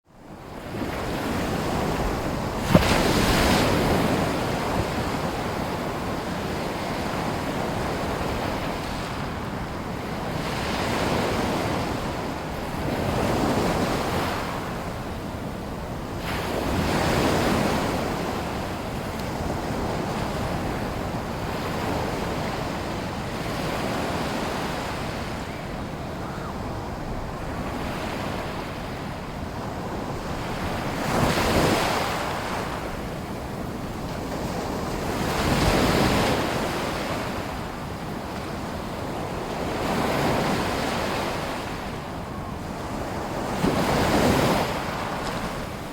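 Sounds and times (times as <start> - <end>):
small waves washing ashore: 0.7 - 15.0.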